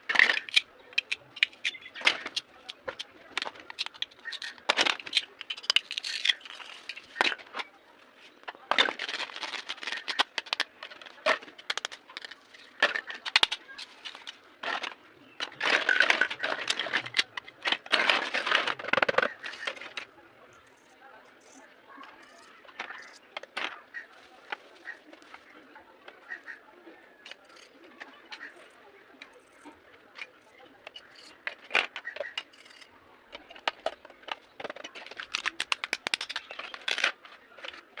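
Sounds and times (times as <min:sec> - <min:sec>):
packaging clicks and snaps: 0:08.7 - 0:14.9, 0:30.9 - 0:37.8
packaging rustling and crackling: 0:08.7 - 0:19.9, 0:33.6 - 0:37.9.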